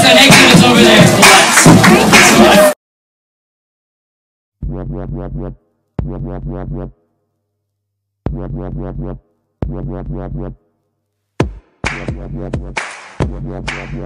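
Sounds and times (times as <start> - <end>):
dubstep electronic music: 11.8 - 14.0.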